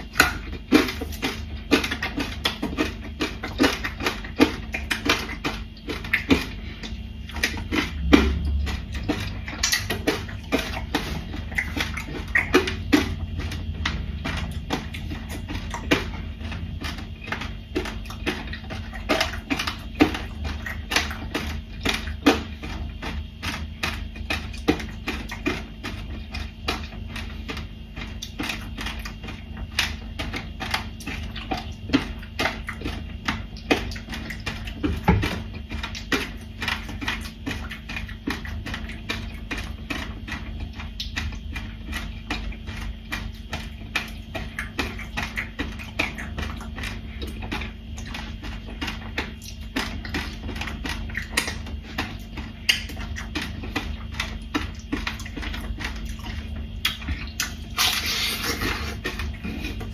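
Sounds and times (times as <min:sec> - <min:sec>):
low hum: 0:00.0 - 0:22.0.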